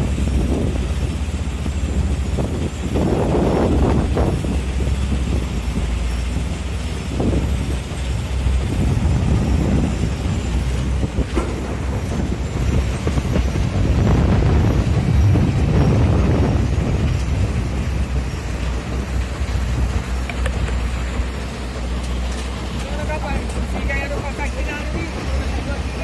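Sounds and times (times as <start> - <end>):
diesel engine rumbling: 0.0 - 26.0.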